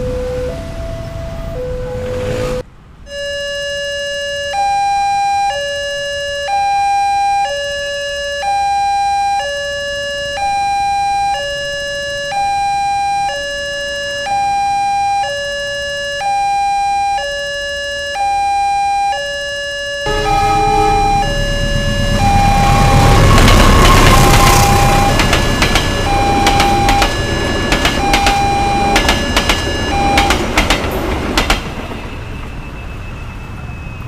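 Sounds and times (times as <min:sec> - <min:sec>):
two-tone crossing alarm: 0:00.0 - 0:34.0
background rumble: 0:20.1 - 0:32.0.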